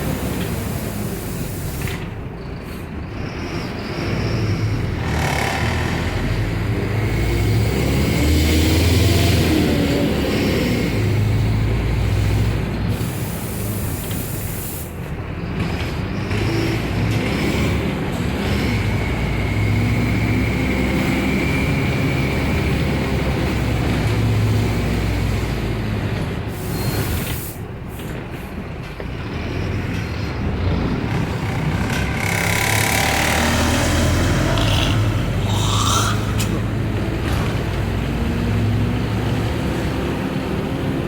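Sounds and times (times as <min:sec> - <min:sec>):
air brakes hissing: 0:00.0 - 0:03.0, 0:12.9 - 0:15.0, 0:26.4 - 0:28.5, 0:33.7 - 0:37.0
bus engine running: 0:00.0 - 0:41.0.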